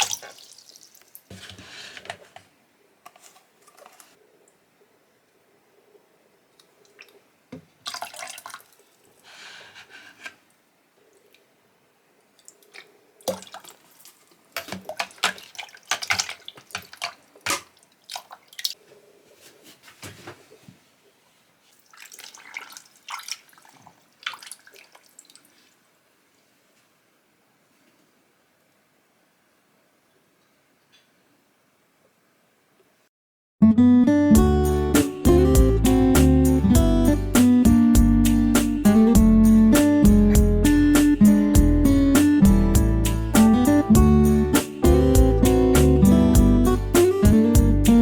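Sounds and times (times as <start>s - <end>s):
water dripping and splashing: 0.0s - 1.3s, 6.6s - 9.2s, 12.3s - 18.8s, 21.6s - 25.9s.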